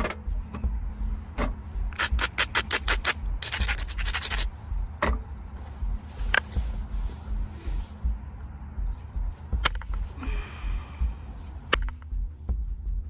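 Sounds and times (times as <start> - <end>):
rapid scraping on stone: 2.0 - 4.5.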